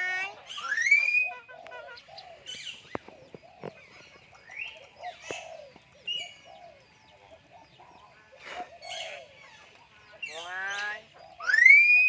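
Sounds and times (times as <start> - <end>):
bird whistling calls: 0.2 - 3.7, 10.3 - 12.0.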